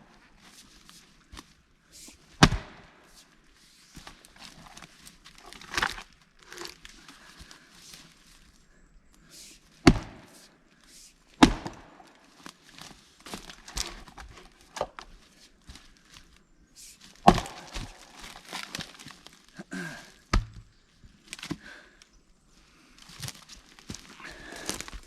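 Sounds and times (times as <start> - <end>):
axe splitting wood: 9.8 - 10.3, 11.4 - 11.9, 17.2 - 18.8, 20.3 - 20.7
rustling: 11.8 - 19.9, 23.0 - 25.0.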